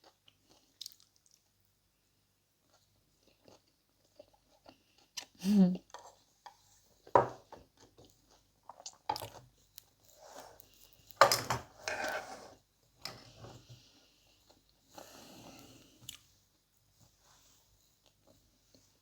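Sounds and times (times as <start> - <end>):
person chewing wetly: 0.0 - 1.5, 2.6 - 5.4.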